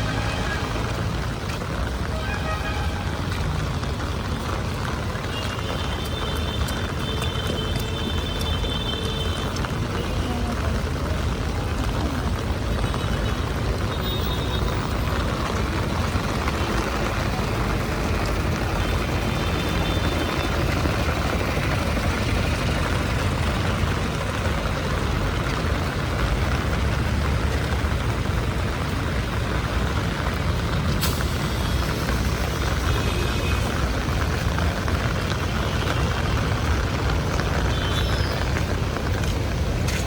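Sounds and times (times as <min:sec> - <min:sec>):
heavy rain on street: 0:00.0 - 0:40.0
traffic rumble: 0:00.0 - 0:40.0.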